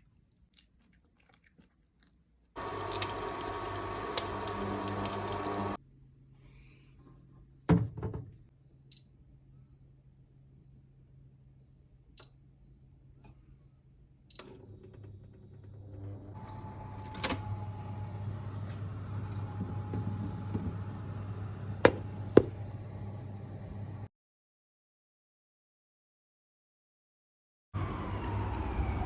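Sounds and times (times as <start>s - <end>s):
appliance electric hum: 2.6s - 5.8s, 14.4s - 24.1s.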